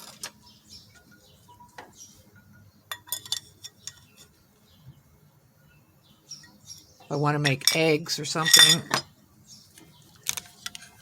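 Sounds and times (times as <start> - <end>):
metal cookware clinking: 2.9 - 4.2, 7.4 - 9.1.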